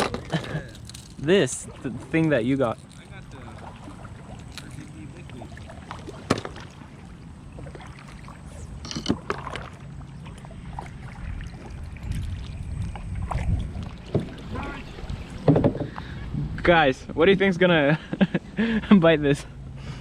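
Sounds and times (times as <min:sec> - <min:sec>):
gear knocking in a kayak: 0:15.3 - 0:16.1.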